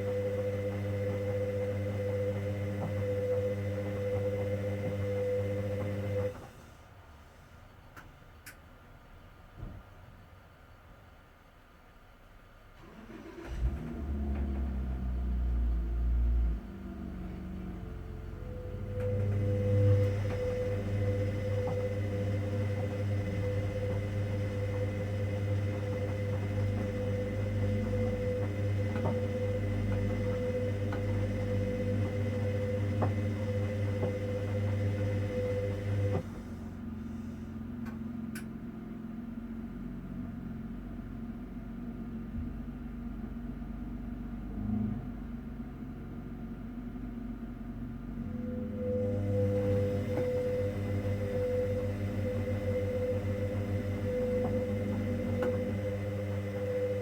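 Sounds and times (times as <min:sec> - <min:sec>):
washing machine motor humming: 0:00.0 - 0:06.6, 0:13.3 - 0:39.6, 0:47.9 - 0:57.0.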